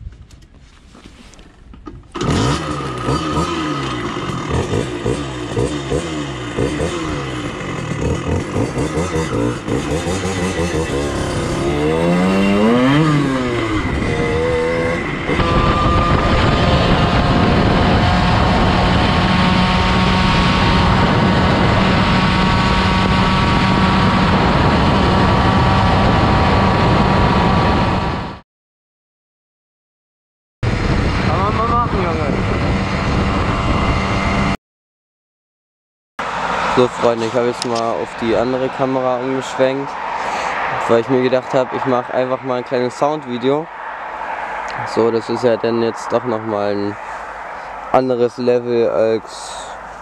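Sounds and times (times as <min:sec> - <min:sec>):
moped engine revving: 0:02.1 - 0:28.4, 0:30.6 - 0:34.6, 0:36.2 - 0:43.1.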